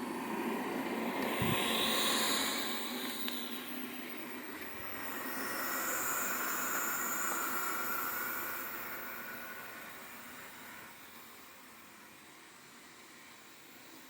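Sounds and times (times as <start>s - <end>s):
high whine: 0.0s - 11.9s
robot vacuum whirring: 0.8s - 11.9s.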